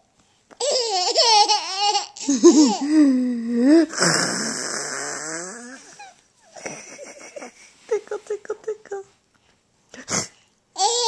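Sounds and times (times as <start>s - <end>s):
baby laughing: 0.6s - 3.0s
adult making silly voice noises: 7.9s - 9.1s.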